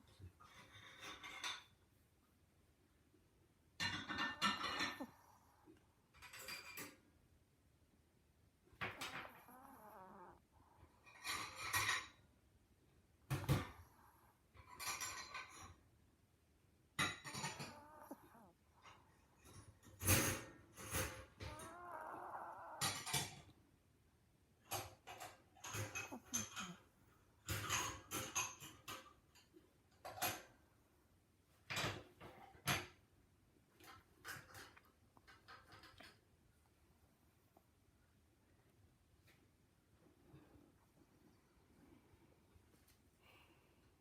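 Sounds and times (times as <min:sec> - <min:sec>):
dog snoring: 0:08.8 - 0:12.1, 0:13.3 - 0:15.6, 0:17.0 - 0:23.4.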